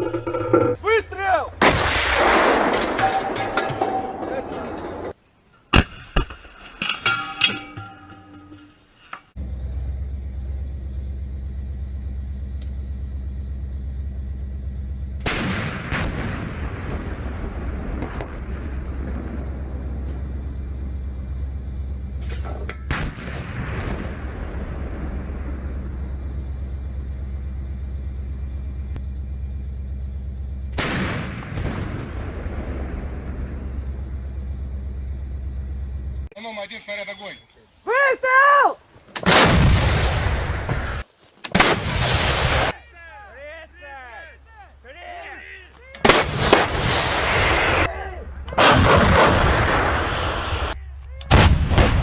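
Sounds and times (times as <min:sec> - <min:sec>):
low engine drone: 0:00.0 - 0:01.7, 0:09.4 - 0:36.3
rolling rumble: 0:00.0 - 0:37.9, 0:38.8 - 0:52.0
artillery gun blast: 0:00.6 - 0:06.3, 0:15.2 - 0:20.1, 0:22.2 - 0:26.0, 0:30.7 - 0:33.8, 0:39.2 - 0:42.8, 0:46.0 - 0:52.0.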